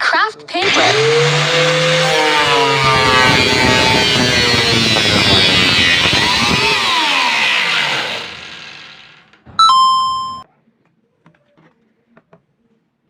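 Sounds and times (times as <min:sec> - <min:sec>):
angle grinder spinning down: 0:00.6 - 0:10.4
short bell-like ding: 0:09.6 - 0:10.4.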